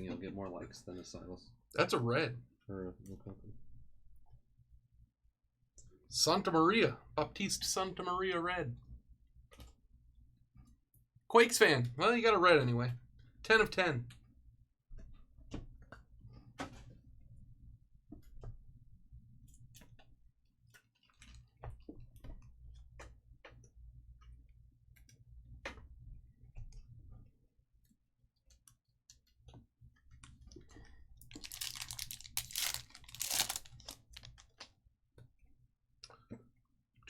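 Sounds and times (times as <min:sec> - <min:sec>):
foil wrappers crinkling: 0:31.2 - 0:34.7.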